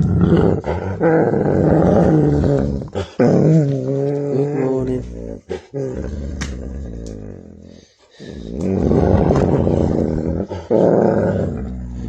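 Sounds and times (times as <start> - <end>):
wolf growling: 0.0 - 12.0.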